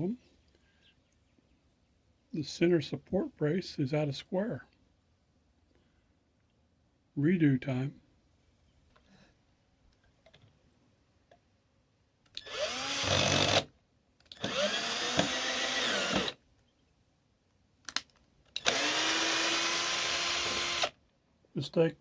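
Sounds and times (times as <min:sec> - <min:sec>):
power drill running: 0:12.4 - 0:13.7, 0:14.3 - 0:16.4, 0:18.6 - 0:21.0.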